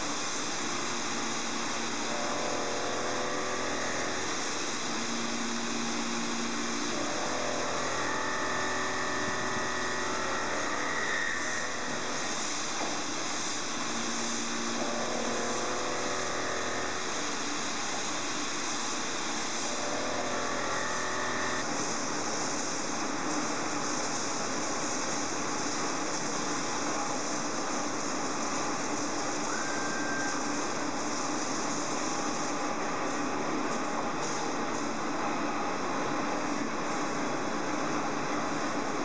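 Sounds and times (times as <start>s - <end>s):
machine whines: 0.0s - 21.9s, 26.3s - 32.6s
milling machine hissing: 0.0s - 39.0s
high machine tone: 0.6s - 12.7s, 13.6s - 21.7s, 29.3s - 30.9s.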